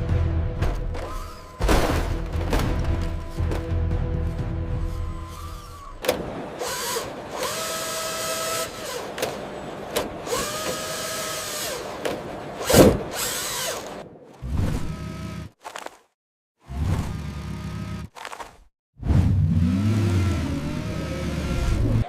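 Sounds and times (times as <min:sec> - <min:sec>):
small electric motor whining: 0:04.8 - 0:09.6, 0:10.2 - 0:12.0.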